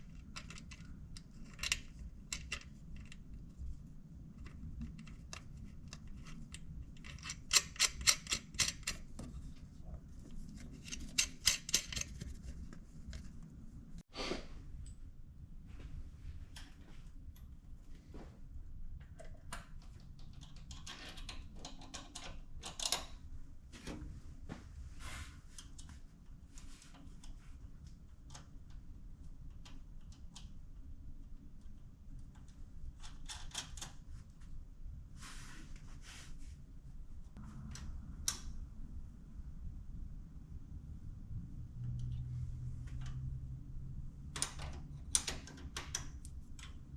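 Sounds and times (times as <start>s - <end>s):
low hum: 37.0s - 44.4s.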